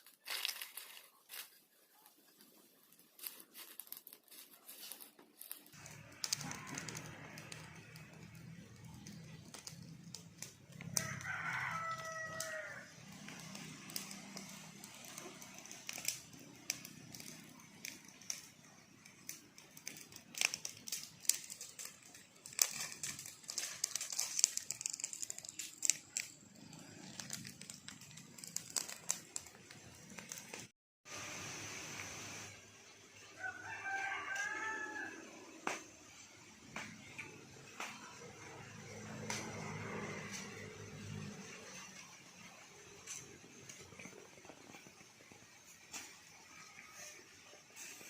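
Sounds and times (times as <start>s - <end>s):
crackles and rustling: 0.0s - 30.7s, 31.9s - 48.0s
rooster crowing: 5.8s - 8.2s, 10.7s - 14.5s, 33.3s - 35.7s.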